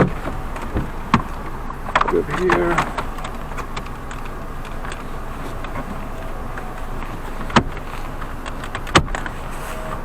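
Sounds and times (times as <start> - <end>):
steady background hum: 0.0 - 10.0.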